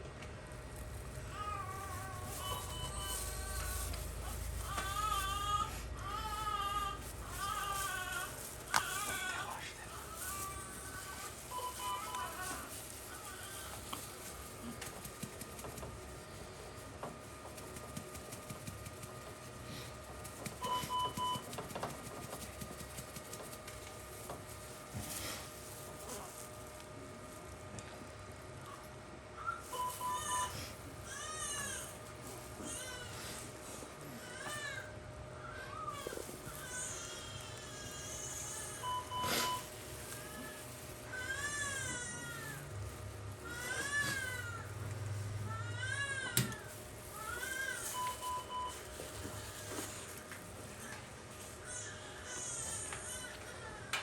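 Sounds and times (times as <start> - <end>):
newborn baby crying: 4.6 - 13.8.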